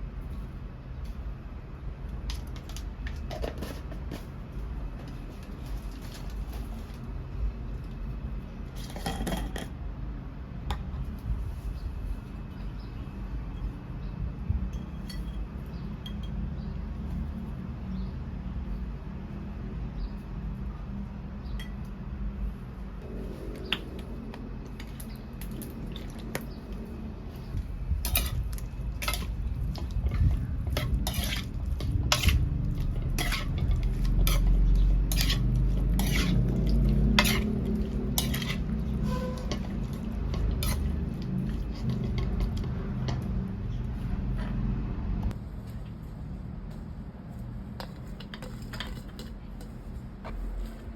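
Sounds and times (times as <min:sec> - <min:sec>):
low rumble: 0:22.2 - 0:47.1.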